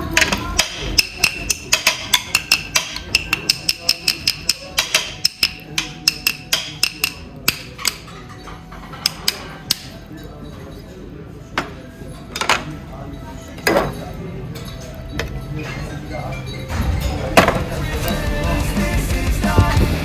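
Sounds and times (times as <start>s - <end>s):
wood block strikes: 0.2s - 8.1s, 9.0s - 9.9s.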